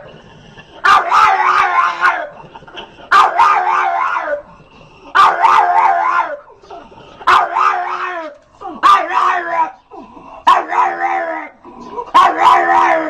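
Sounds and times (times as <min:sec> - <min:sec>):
dog howling: 0:00.8 - 0:02.4, 0:03.1 - 0:04.5, 0:05.2 - 0:06.5, 0:07.3 - 0:13.0.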